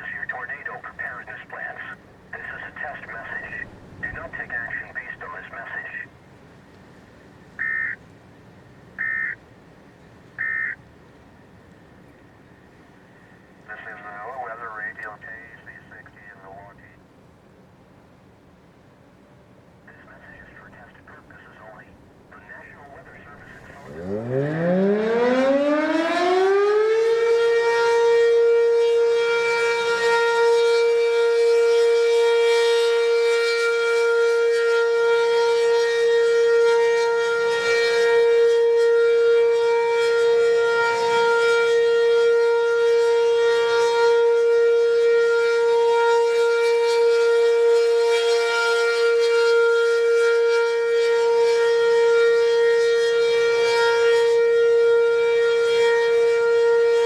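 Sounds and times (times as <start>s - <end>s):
tornado siren winding up: 23.1s - 43.8s.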